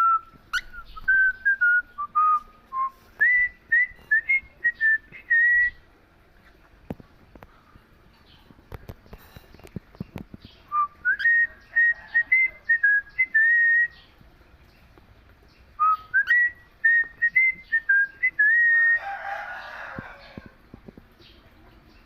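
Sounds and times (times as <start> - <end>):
cockatiel whistling a tune: 0.0 - 5.8, 10.7 - 14.0, 15.8 - 19.0.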